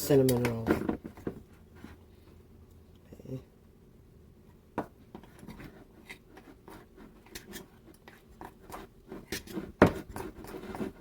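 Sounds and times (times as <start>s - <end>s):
spoon scraping a bowl: 5.6s - 11.0s.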